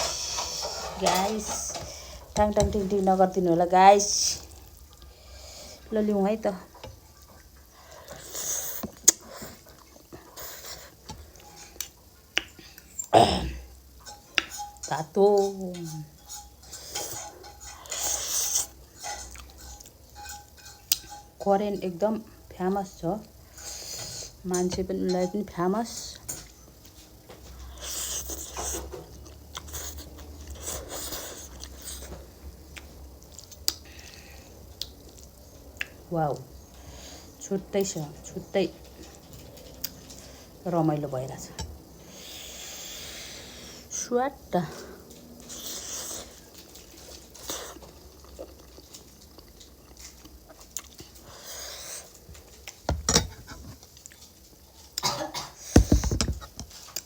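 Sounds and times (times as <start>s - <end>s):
chewing and mouth sounds: 6.6s - 13.1s, 26.8s - 36.0s, 45.0s - 52.9s.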